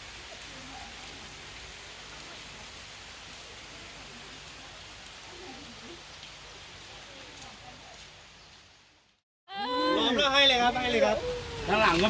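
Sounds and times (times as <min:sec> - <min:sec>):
dew dripping from trees: 0:00.0 - 0:09.2, 0:10.0 - 0:12.0.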